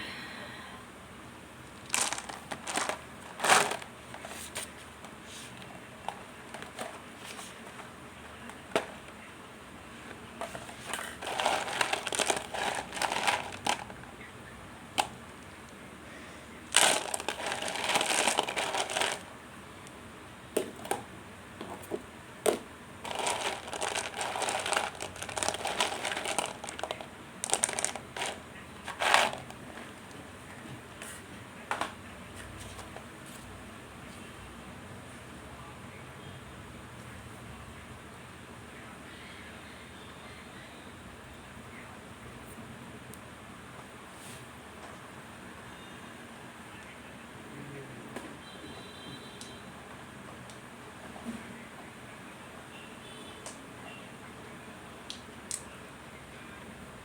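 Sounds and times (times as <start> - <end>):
packaging crinkling and crunching: 1.8 - 4.7, 10.5 - 14.1, 16.7 - 19.3, 23.0 - 30.2.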